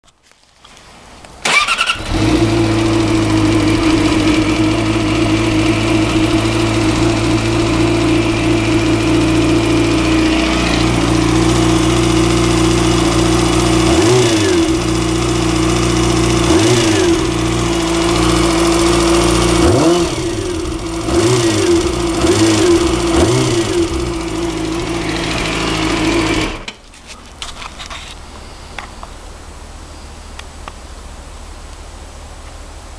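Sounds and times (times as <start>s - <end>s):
rattling car engine running: 1.5s - 26.7s.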